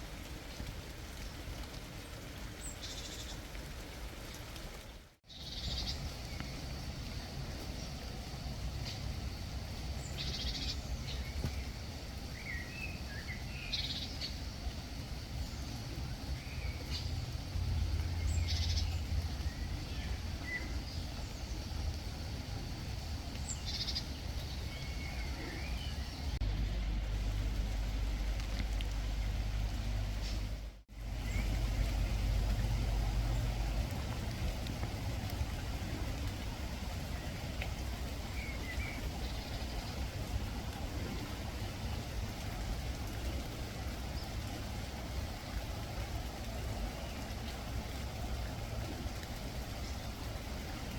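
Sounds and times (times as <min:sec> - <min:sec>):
birds chirping softly: 0:00.3 - 0:50.9
birds calling: 0:08.8 - 0:22.2, 0:23.0 - 0:26.5
steady low rumble: 0:12.9 - 0:50.9.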